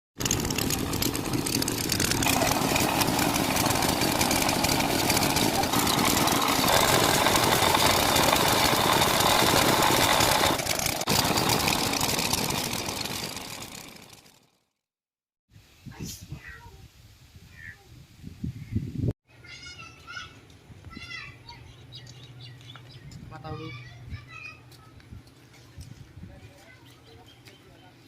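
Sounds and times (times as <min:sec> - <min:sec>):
diesel engine running: 0:00.2 - 0:14.5.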